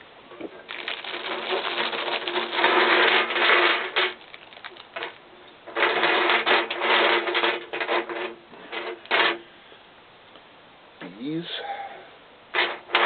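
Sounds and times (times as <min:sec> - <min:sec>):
plastic packaging crinkling: 0:00.3 - 0:09.0.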